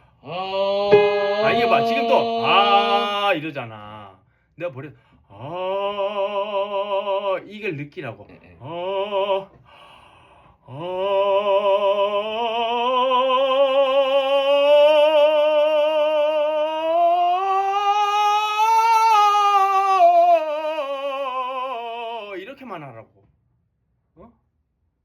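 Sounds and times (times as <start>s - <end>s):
person singing long vowel: 0.2s - 3.4s, 10.7s - 22.3s
classical singer holding note: 0.8s - 3.4s.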